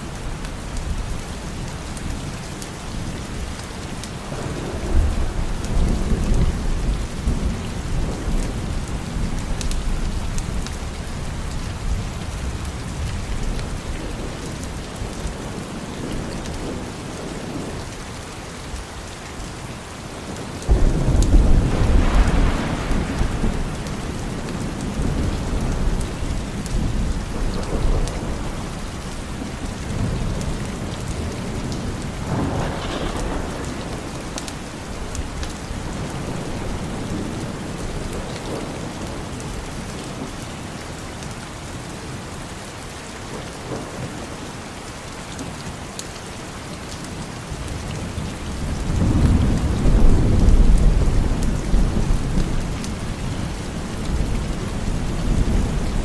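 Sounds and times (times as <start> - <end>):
steady rain falling: 0.0 - 56.0
distant thunder rolling: 4.2 - 10.1, 20.7 - 39.6, 48.6 - 56.0.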